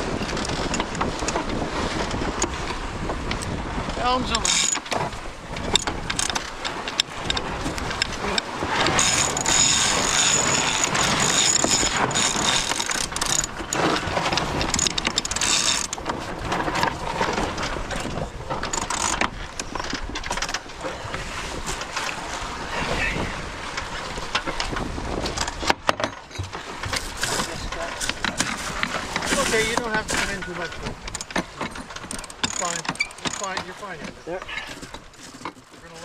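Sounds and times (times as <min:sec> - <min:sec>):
water noise: 0:00.0 - 0:36.0
wind over microphone: 0:00.0 - 0:36.0
winch clicking: 0:04.4 - 0:20.7, 0:24.4 - 0:35.6.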